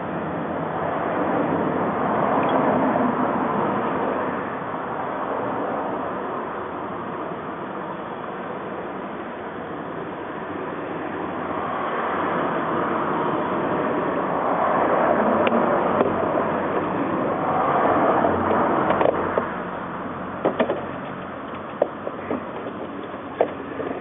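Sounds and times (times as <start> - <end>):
sharp clicks and knocks: 18.5 - 19.5, 20.4 - 24.0.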